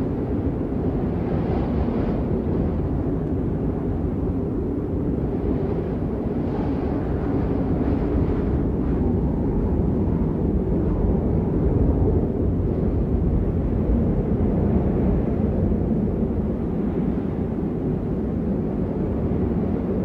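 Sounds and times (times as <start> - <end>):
strong wind blowing: 0.0 - 20.0.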